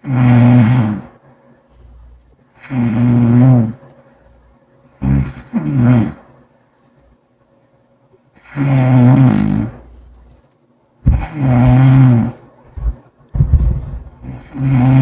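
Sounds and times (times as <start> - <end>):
person snoring loudly: 0.0 - 1.1, 2.6 - 3.8, 5.0 - 6.2, 8.4 - 9.8, 11.0 - 13.5, 14.1 - 15.0.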